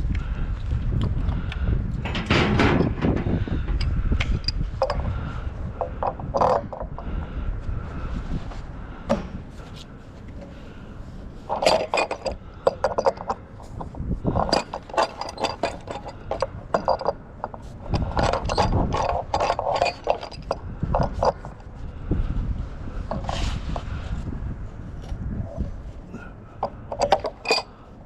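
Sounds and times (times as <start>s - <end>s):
scrap metal clanking and scraping: 1.9s - 7.1s, 11.4s - 21.7s, 23.0s - 24.1s, 25.5s - 28.0s.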